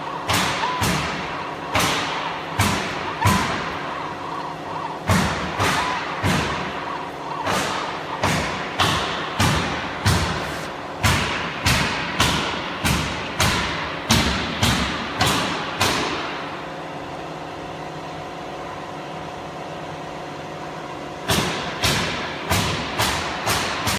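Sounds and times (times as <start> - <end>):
machine hum: 0.0 - 23.9
sharp mechanical knocks: 0.2 - 3.9, 4.9 - 16.5.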